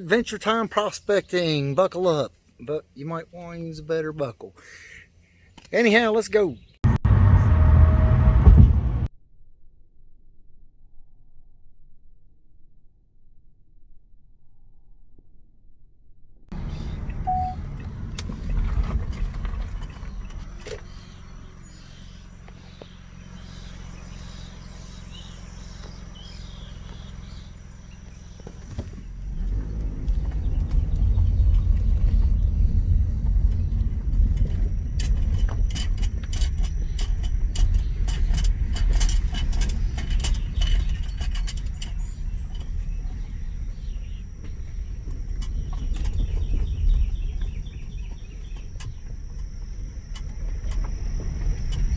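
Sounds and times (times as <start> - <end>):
road rumble: 0.0 - 9.1, 16.5 - 51.9
car engine humming: 6.8 - 9.1, 16.5 - 51.9.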